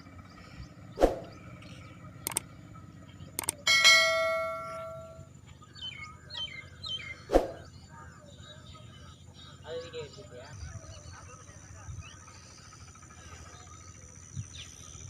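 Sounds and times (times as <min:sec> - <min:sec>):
birds chirping: 0:00.0 - 0:15.0
sharp clicks: 0:02.2 - 0:02.5, 0:03.4 - 0:03.6
metallic bell-like ring: 0:03.7 - 0:05.3.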